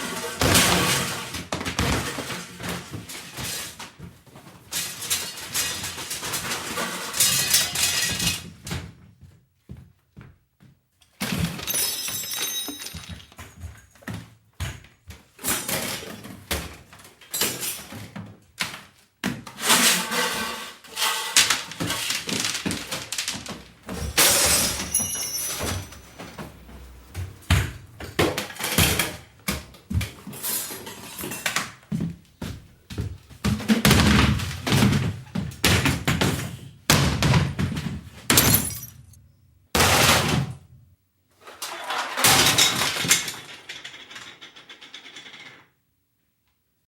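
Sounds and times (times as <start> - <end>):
objects thudding and clattering: 11.2 - 18.4, 21.0 - 31.6, 33.0 - 39.2, 41.4 - 45.6.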